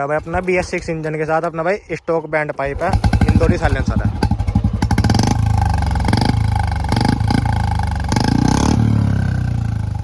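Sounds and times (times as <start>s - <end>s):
motorcycle engine revving: 2.7s - 10.0s.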